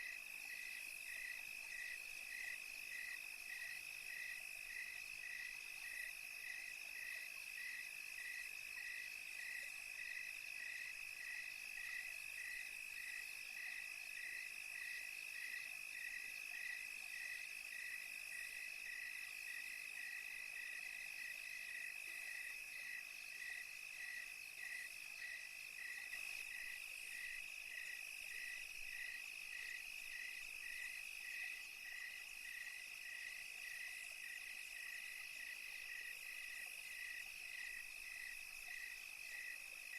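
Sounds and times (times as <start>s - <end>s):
cricket chirping: 0.0s - 39.9s.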